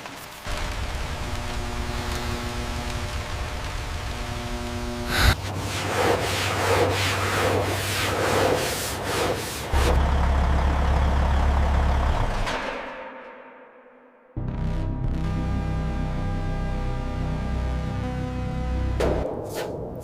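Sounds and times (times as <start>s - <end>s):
low machine hum: 0.5s - 5.4s
rasping sanding strokes: 5.1s - 9.8s.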